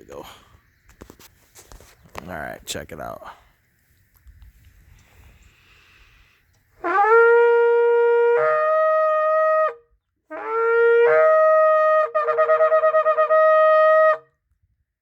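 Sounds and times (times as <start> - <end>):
shofar blasts: 6.8 - 14.3.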